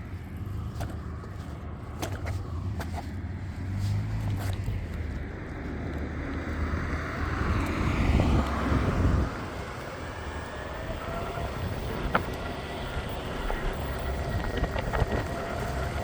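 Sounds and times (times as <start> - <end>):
skateboard wheels rumbling on pavement: 0.0 - 16.0
wind on microphone: 6.7 - 16.0
faint motor whine: 8.9 - 16.0.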